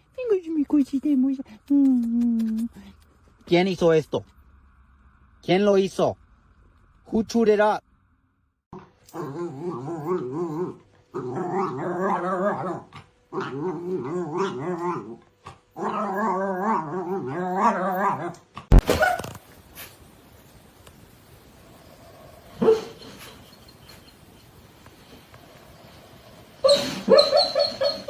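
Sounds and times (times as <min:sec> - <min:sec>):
dog growling and howling: 0:08.8 - 0:18.6, 0:25.8 - 0:28.0.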